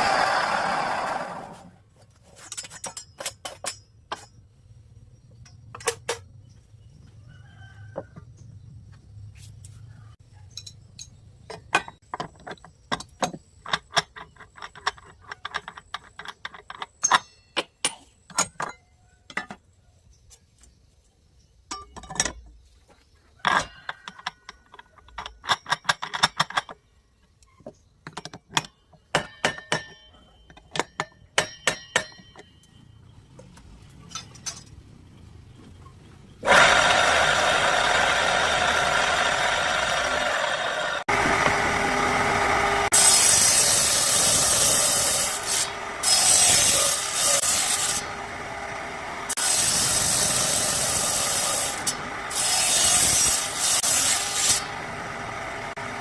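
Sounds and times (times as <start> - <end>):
saw motor running: 0.0 - 1.7, 36.4 - 56.0.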